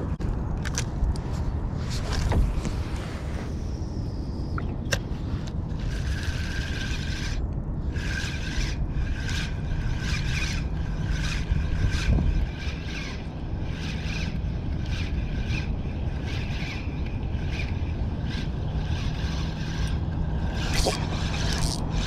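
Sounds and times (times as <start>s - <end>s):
fishing reel gears whining: 5.4s - 22.0s.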